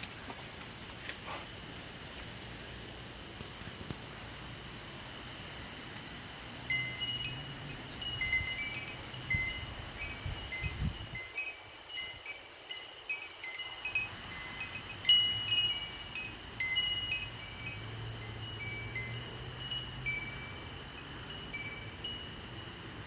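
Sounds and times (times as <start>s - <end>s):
wind chimes ringing: 6.6s - 23.0s.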